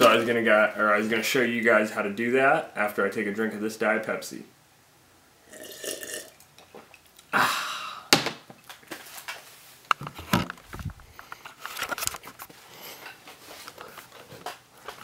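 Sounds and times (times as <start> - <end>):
breathy burst: 7.3 - 8.2.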